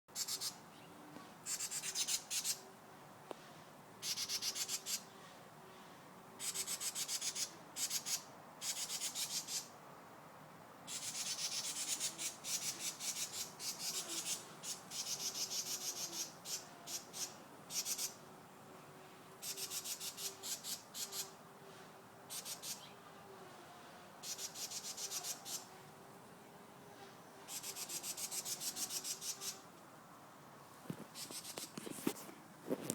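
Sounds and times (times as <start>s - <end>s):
bird giving rasping buzzes: 1.4s - 2.6s, 4.0s - 5.1s, 6.4s - 9.8s, 10.9s - 18.5s, 19.3s - 29.7s.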